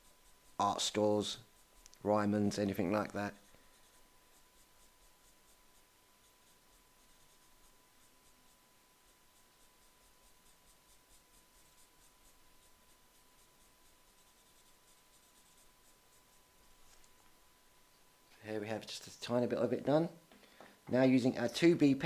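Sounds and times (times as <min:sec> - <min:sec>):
blending stump scratching paper: 0:02.5 - 0:17.1.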